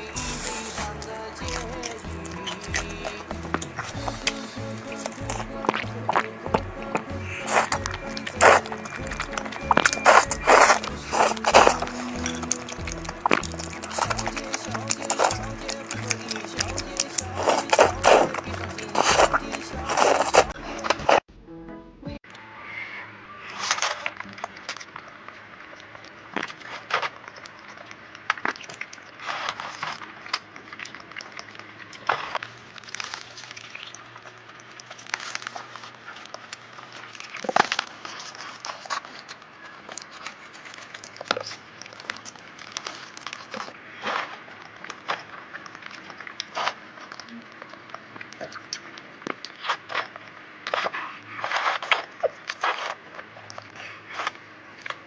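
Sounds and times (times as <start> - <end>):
crunching chewing sounds: 0.0 - 20.6.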